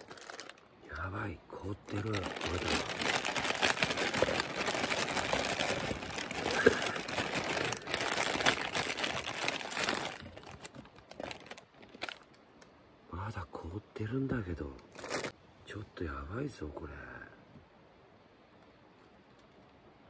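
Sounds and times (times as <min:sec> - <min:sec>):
food packaging crinkling: 0:00.0 - 0:12.4, 0:14.8 - 0:15.4.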